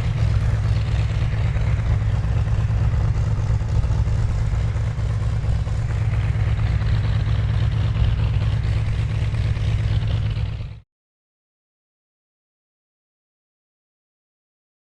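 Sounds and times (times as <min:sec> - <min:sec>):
simulated radial engine rumble: 0:00.0 - 0:10.8.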